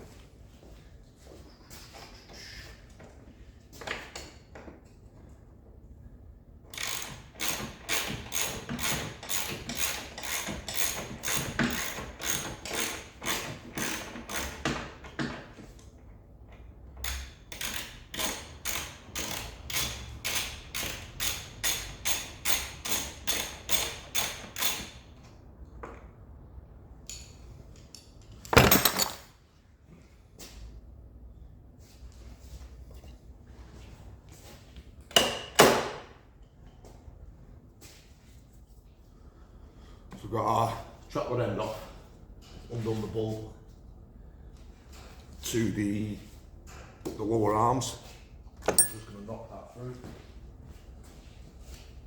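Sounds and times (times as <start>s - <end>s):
ratchet wrench clicking: 6.8s - 14.5s.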